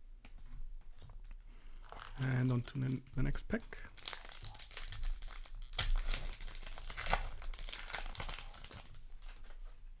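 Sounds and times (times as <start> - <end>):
foil wrapper tearing and crinkling: 3.5 - 9.6.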